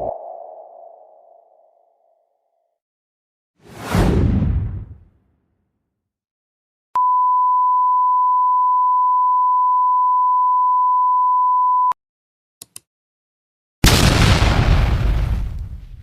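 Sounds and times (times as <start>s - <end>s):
steady pure beep tone: 7.0s - 12.0s
loud blast sound effect: 13.8s - 15.7s.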